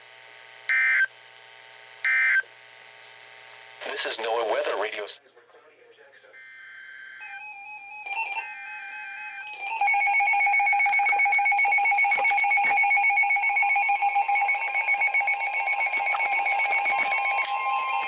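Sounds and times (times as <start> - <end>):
steady single-pitch warning tone: 6.3 - 18.0
warbling electronic alarm: 6.4 - 18.0.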